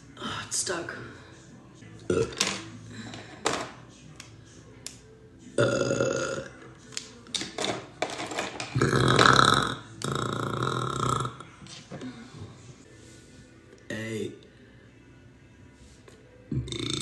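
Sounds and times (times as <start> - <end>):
woman burping: 2.1 - 2.4, 5.6 - 6.5, 8.8 - 11.4.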